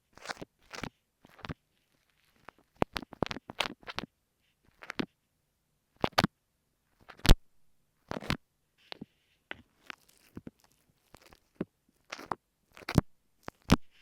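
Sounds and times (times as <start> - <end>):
sand slime crunching: 9.7 - 13.7.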